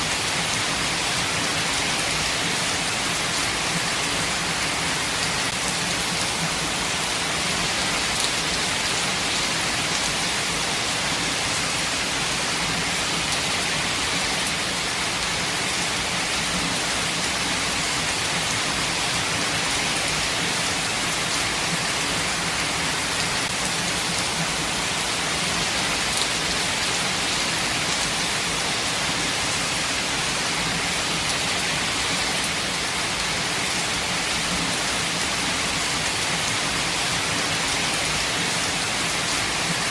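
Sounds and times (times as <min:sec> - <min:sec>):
rain falling in forest: 0:00.0 - 0:39.9.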